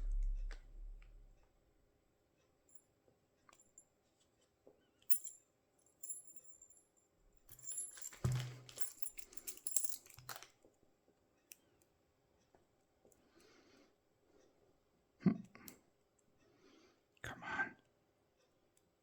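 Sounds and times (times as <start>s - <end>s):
metallic clatter and jangle: 5.1s - 10.5s.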